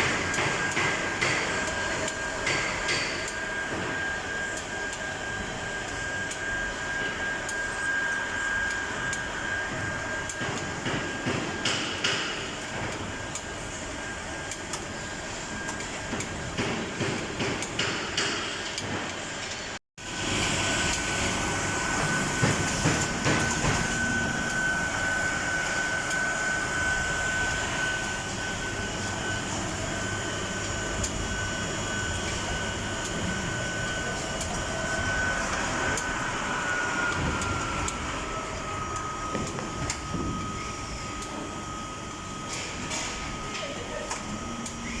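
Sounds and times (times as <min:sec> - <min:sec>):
high machine whine: 0:00.0 - 0:18.6, 0:19.2 - 0:45.0
wrapping machine running: 0:20.0 - 0:45.0.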